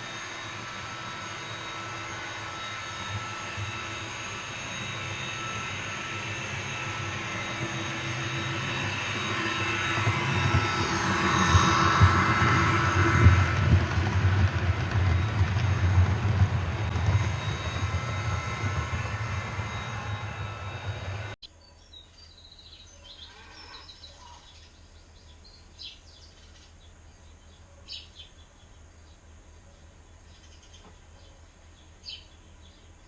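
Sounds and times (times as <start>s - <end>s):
train rumbling past: 0.0s - 21.4s.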